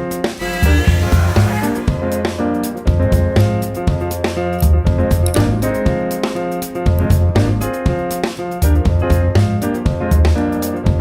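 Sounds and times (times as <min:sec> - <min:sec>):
bass line: 0:00.4 - 0:05.7
piano tune: 0:00.4 - 0:06.1.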